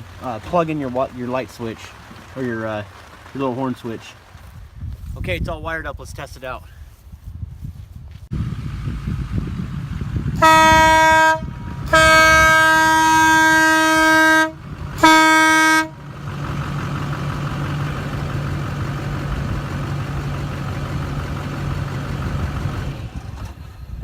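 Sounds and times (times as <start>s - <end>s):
vehicle engine idling: 0.0s - 4.7s, 8.3s - 24.0s
train air horn blasts: 10.4s - 16.1s.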